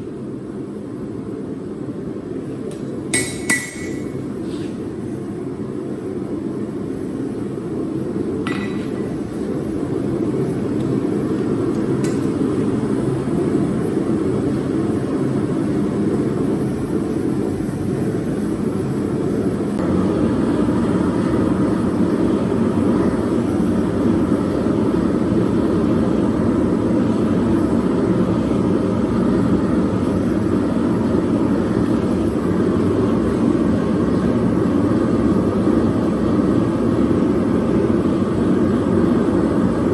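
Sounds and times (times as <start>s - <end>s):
light metallic clinks: 3.2s - 4.2s.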